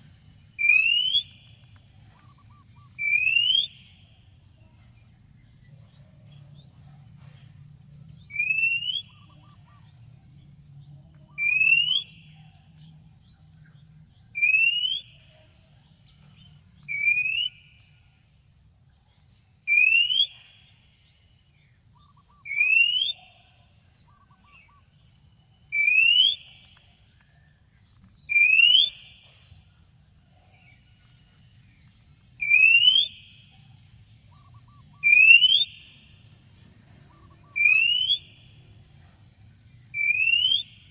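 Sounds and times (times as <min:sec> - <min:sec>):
faint low hum: 0:00.0 - 0:19.7.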